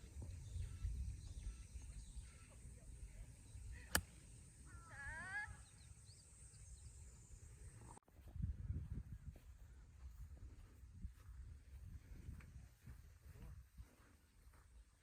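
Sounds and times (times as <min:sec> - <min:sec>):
wind rumble on microphone: 0:00.0 - 0:02.4, 0:08.1 - 0:14.9.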